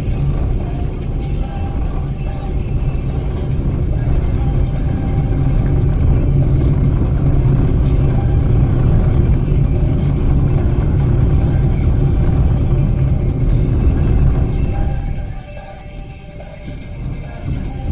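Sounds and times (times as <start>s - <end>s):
car engine rumble: 0.0s - 17.9s
road noise: 0.0s - 17.9s.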